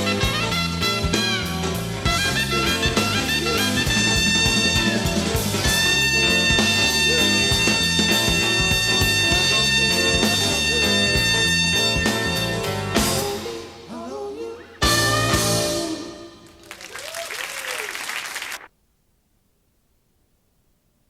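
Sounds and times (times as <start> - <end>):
horn holding long high note: 0.0 - 12.9
soul band playing: 0.0 - 16.8.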